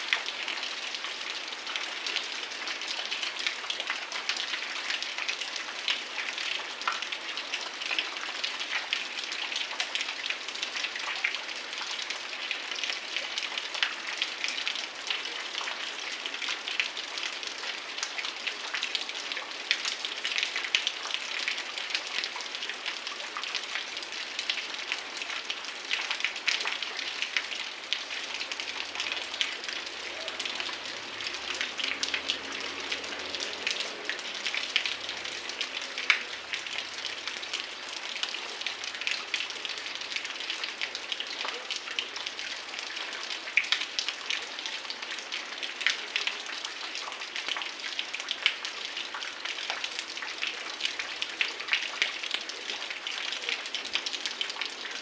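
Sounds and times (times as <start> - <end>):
heavy rain falling: 12.8 - 44.2.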